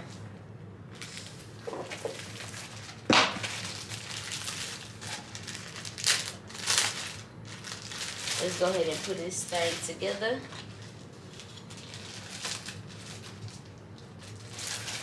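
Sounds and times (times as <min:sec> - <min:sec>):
packaging ripping: 0:01.0 - 0:10.0, 0:10.6 - 0:15.0
packaging rustling: 0:01.0 - 0:15.0.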